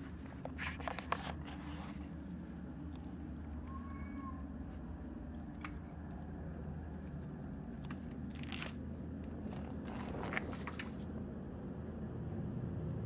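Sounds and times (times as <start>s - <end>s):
steady low hum: 0.0s - 13.0s
crunching scraping noise: 7.8s - 11.1s.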